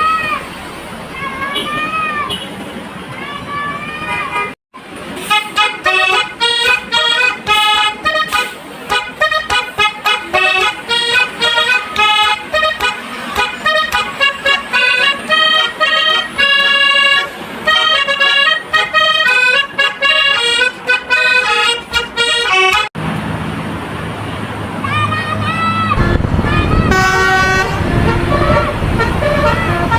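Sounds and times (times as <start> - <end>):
bus musical horn tune: 4.0 - 23.0, 26.0 - 29.9.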